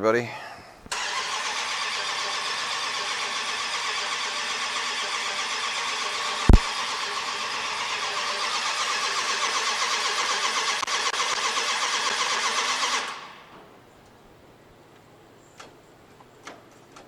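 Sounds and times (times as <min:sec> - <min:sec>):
engine starter cranking: 0:00.9 - 0:13.7.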